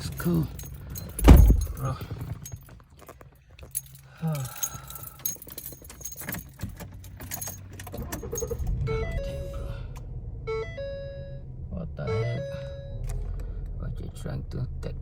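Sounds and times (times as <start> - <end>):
keys jangling: 0.0 - 8.7.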